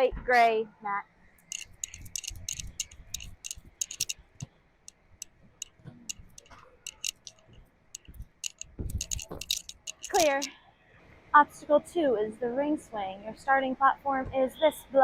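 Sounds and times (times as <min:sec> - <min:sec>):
light clicks: 0:01.5 - 0:04.2, 0:05.6 - 0:10.5.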